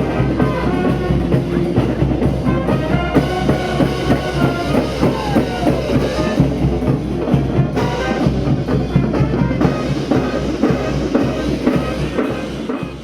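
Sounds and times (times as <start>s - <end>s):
horns sliding between notes: 0.0s - 7.0s
brass band playing: 0.0s - 13.0s
steady drum beat: 0.0s - 13.0s.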